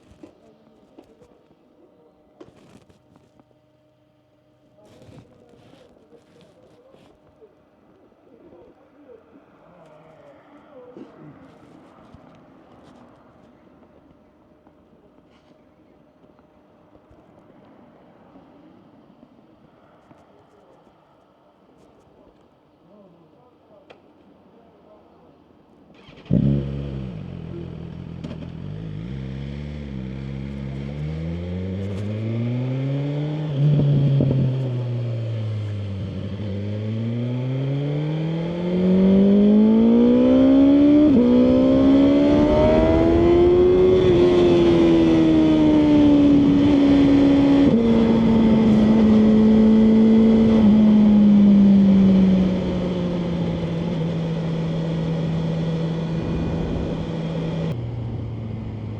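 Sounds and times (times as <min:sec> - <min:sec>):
motorcycle engine revving: 0:26.0 - 0:58.9.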